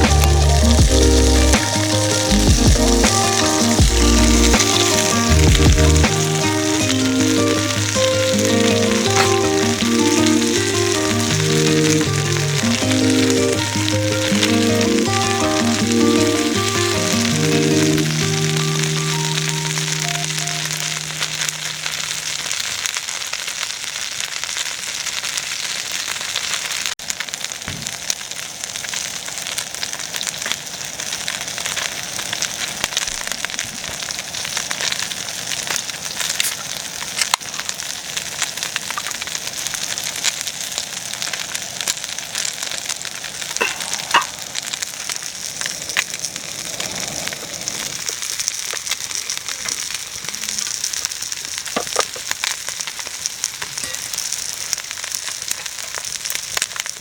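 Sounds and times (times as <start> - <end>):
sharp pops: 0.0 - 10.6
food sizzling on griddle: 0.0 - 57.0.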